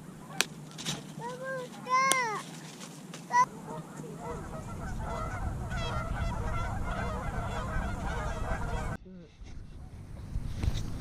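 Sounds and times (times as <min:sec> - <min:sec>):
geese honking: 0:00.0 - 0:02.1, 0:03.3 - 0:09.0
low rumble: 0:03.5 - 0:11.0.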